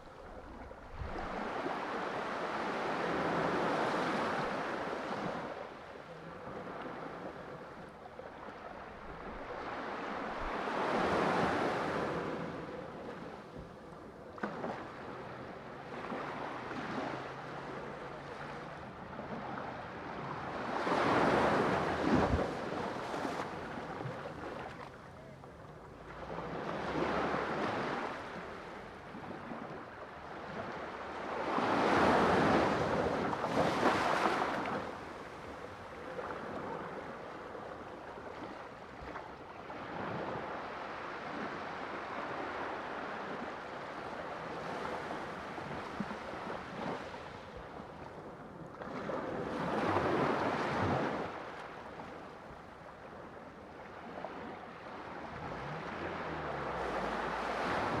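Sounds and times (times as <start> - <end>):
sea waves breaking: 0.0 - 58.0.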